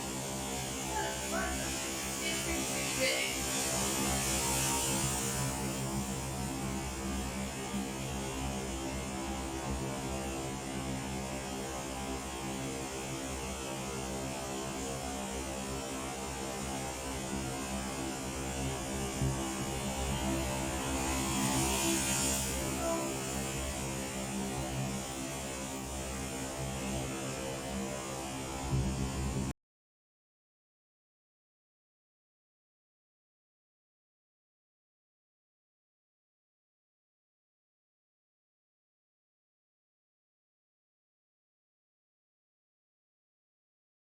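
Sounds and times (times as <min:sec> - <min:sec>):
steady hum: 0:00.0 - 0:08.3, 0:16.4 - 0:29.5
even hiss: 0:19.6 - 0:24.5.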